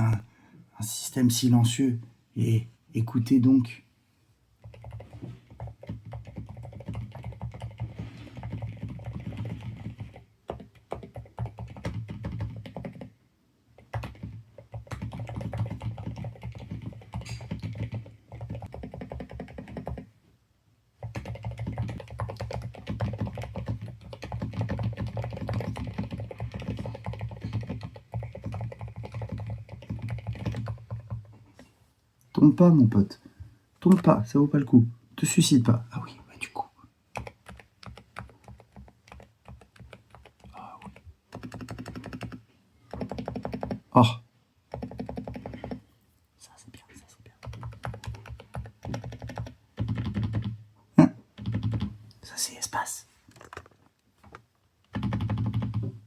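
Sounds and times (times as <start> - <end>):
typing on mechanical keyboard: 4.6 - 13.2, 13.8 - 20.1, 21.0 - 31.3, 37.1 - 43.9, 44.7 - 45.8, 47.3 - 50.6, 51.3 - 52.0, 53.3 - 56.0.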